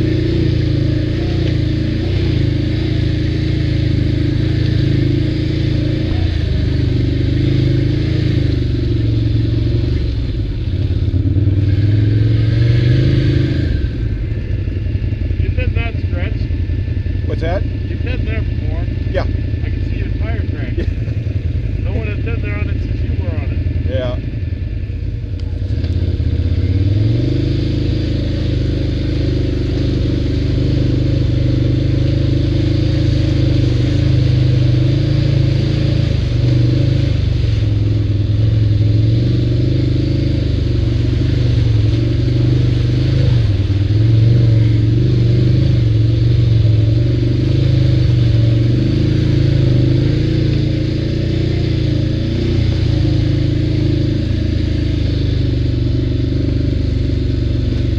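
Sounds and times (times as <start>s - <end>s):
atv engine running: 0.0s - 57.9s.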